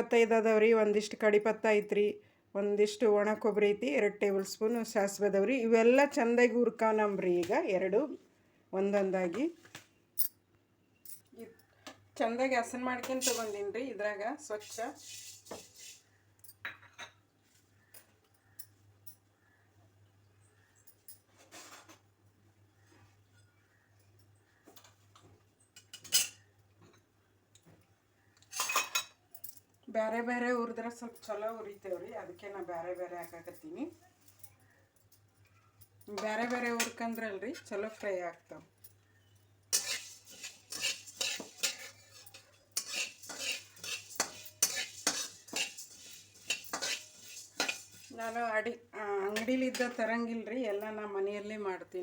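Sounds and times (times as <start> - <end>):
spatula scraping in a pan: 14.5 - 16.2, 21.4 - 22.0, 39.7 - 48.6
spoon clinking against metal: 28.5 - 29.7, 38.8 - 48.4, 49.3 - 51.0.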